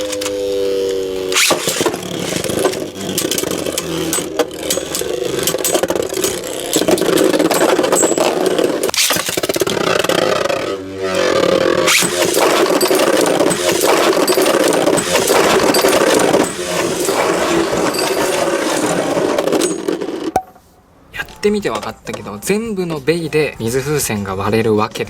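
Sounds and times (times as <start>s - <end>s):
spinning tops whirring: 0.0s - 20.6s
tops scraping and clattering: 1.2s - 20.8s
sharp impact clicks: 1.3s - 10.2s.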